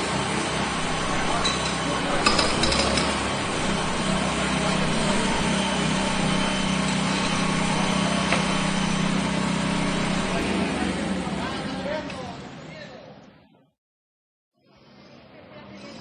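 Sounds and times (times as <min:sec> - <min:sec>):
jackhammer running: 0:00.2 - 0:11.7.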